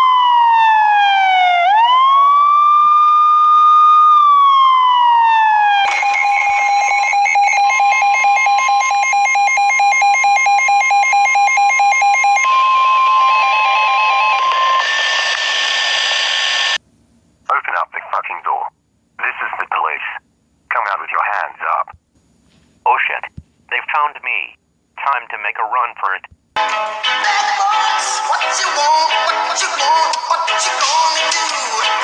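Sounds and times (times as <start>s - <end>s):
electronic police siren: 0.0s - 16.8s.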